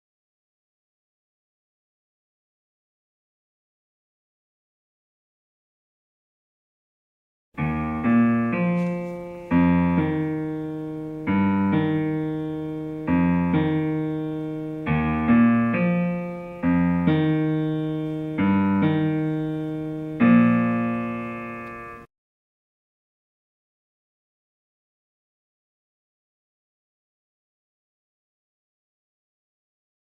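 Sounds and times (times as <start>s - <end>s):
slow piano passage: 7.6s - 22.1s.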